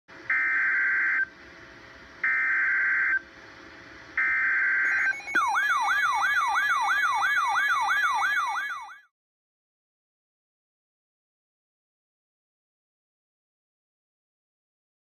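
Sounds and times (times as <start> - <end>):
warbling siren-like alert tone: 4.3 - 9.1
digital data bursts: 4.9 - 7.2.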